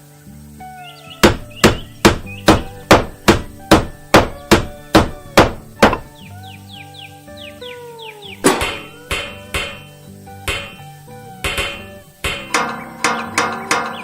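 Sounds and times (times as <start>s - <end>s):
sharp hammer-like knocks: 1.2s - 6.1s, 8.5s - 14.0s.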